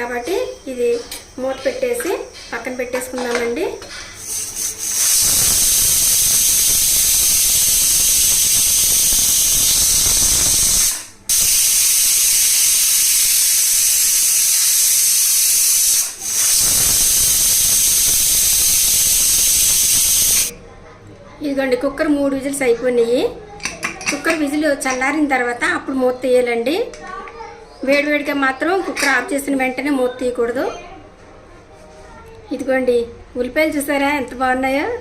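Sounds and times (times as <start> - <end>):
pressure cooker whistle: 4.2 - 20.5.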